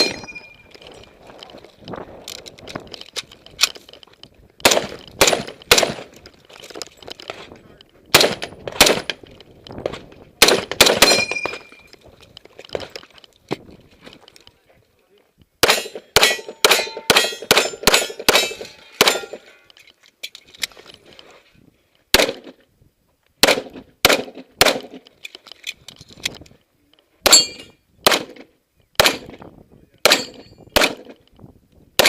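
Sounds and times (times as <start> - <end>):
high metallic ring: 0.0 - 1.1
gunshots: 4.6 - 6.2, 8.1 - 9.2, 9.9 - 11.7, 15.6 - 19.4, 22.1 - 22.6, 23.4 - 25.0, 27.2 - 28.4, 29.0 - 29.4, 30.0 - 31.2.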